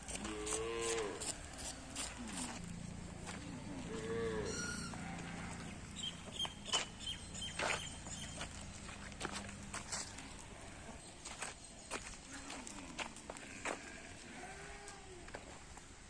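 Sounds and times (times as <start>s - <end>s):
steady low hum: 0.0s - 14.3s
sheep bleating: 3.2s - 6.2s, 9.7s - 11.0s, 12.2s - 15.4s
small bird chirping: 5.6s - 9.0s.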